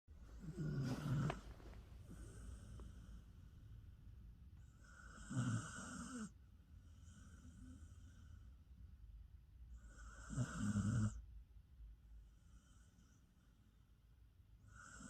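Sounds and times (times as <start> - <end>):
dog snoring: 0.2 - 3.5, 4.6 - 8.4, 9.7 - 11.2, 14.7 - 15.0.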